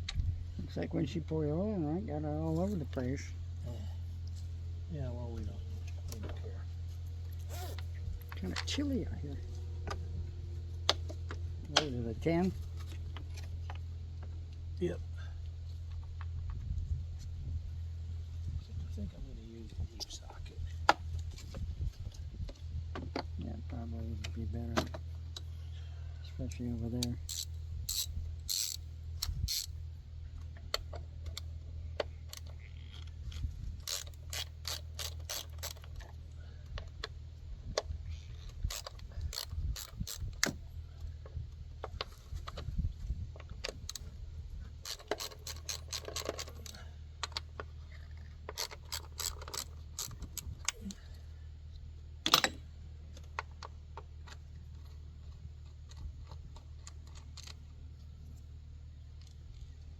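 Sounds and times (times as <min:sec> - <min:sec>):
socket ratchet clicking: 0:27.0 - 0:29.8, 0:33.8 - 0:35.9, 0:38.6 - 0:40.6, 0:44.8 - 0:46.8, 0:48.5 - 0:50.8.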